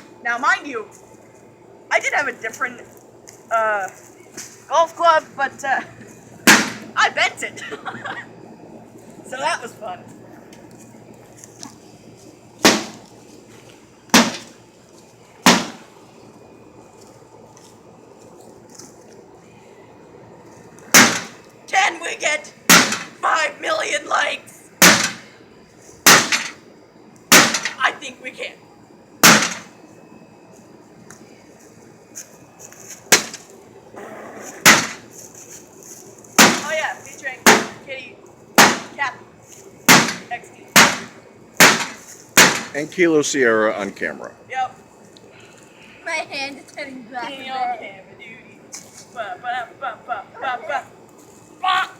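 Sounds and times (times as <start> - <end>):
golf club banging microwave: 6.4 - 6.9, 14.1 - 14.6, 15.4 - 15.9, 20.9 - 21.4, 22.7 - 23.2, 24.8 - 25.3, 26.1 - 26.6, 27.3 - 27.8, 29.2 - 29.8, 34.6 - 35.0, 36.4 - 36.7, 37.5 - 37.8, 38.6 - 39.0, 39.9 - 42.8.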